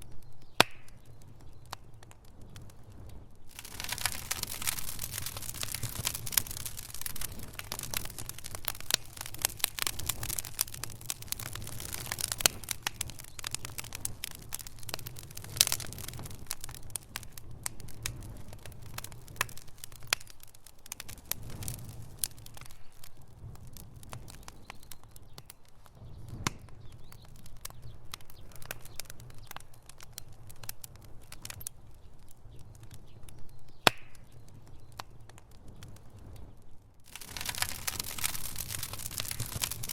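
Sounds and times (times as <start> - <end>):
low rumble of flames: 0.0 - 39.9
wood fire crackling and popping: 0.0 - 39.9.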